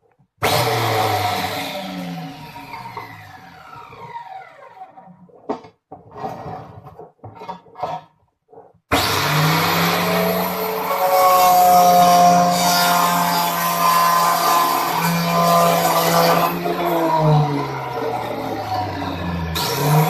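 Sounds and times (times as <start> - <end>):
cut-off saw running hum: 0.4 - 4.8, 8.9 - 20.0
motor winding down whine: 0.4 - 4.9
knocks and scrapes: 5.0 - 8.9.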